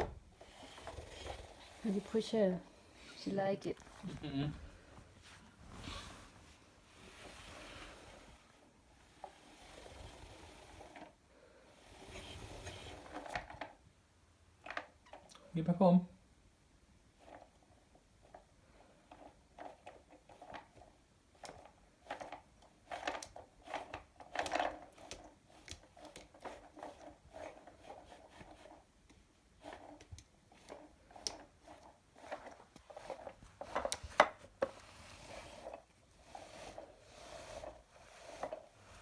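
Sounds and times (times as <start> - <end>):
toy car clicking and rattling: 0.0 - 2.4, 19.0 - 28.9, 29.6 - 39.0.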